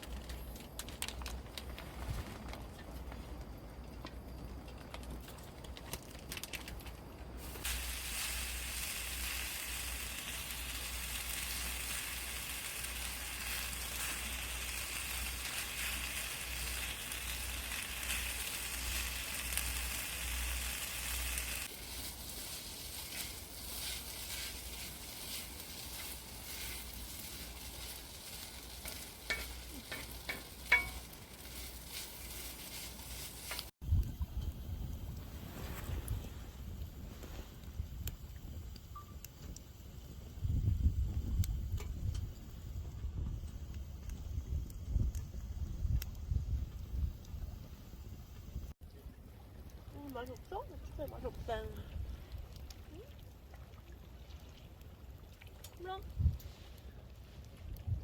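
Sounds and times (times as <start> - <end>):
food sizzling in a pan: 7.4 - 33.8.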